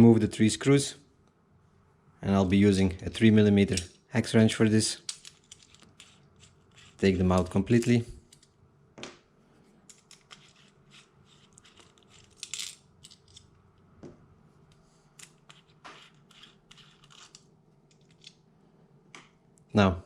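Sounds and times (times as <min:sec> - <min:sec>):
hex wrench turning screws: 0:05.1 - 0:07.0.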